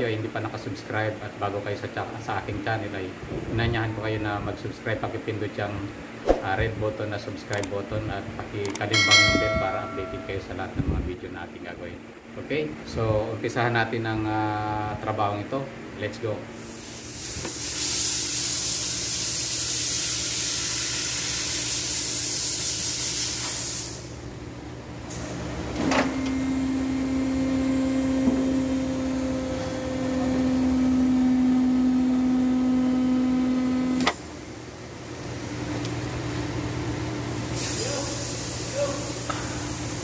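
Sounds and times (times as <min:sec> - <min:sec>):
strong steady air hiss: 0:00.0 - 0:25.4, 0:37.2 - 0:40.0
click: 0:08.6 - 0:08.8
motor humming: 0:25.7 - 0:34.3.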